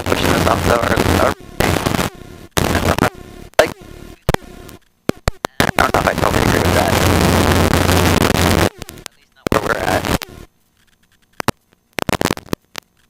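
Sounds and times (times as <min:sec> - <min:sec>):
helicopter cabin noise: 0:00.0 - 0:04.5, 0:05.2 - 0:11.5
sharp intercom clicks: 0:02.6 - 0:07.0, 0:08.5 - 0:10.4.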